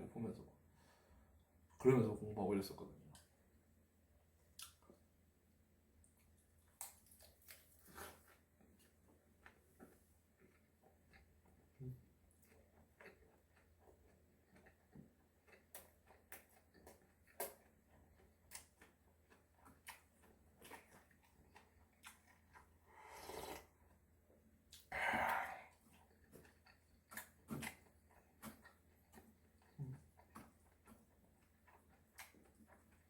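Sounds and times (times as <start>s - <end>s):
soft chewing: 2.9s - 5.2s, 5.9s - 33.0s
wet mouth clicks: 4.6s - 5.0s.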